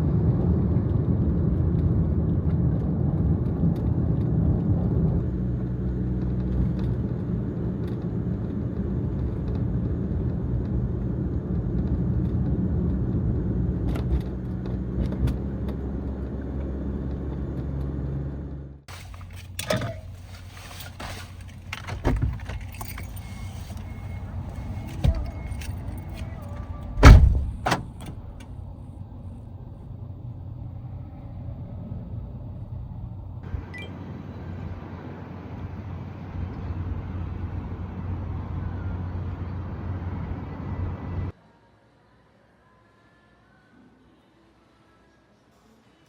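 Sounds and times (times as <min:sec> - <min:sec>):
van engine running: 0:04.5 - 0:41.3
light clicks and rattles: 0:18.9 - 0:28.5.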